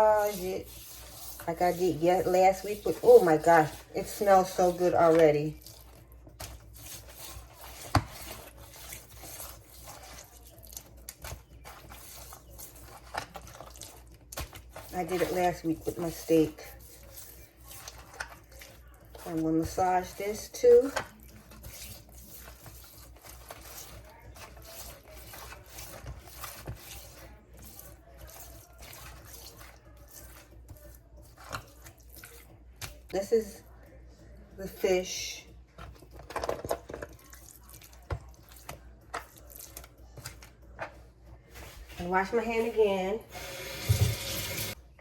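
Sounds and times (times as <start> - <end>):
hands rubbing wet fish: 0.0 - 33.2.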